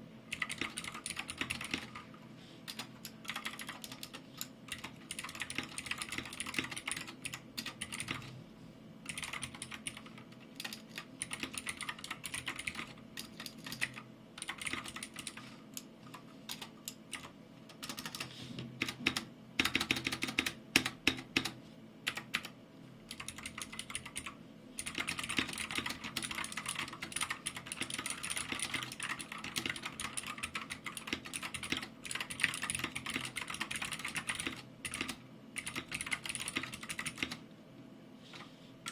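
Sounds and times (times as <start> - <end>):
mechanical keyboard typing clicks: 0.3 - 2.0, 2.7 - 8.3, 9.1 - 37.4.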